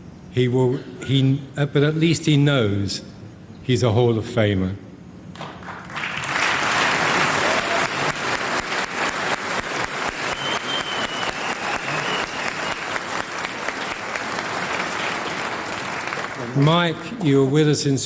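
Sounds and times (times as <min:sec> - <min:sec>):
large audience applauding: 0:05.4 - 0:17.0.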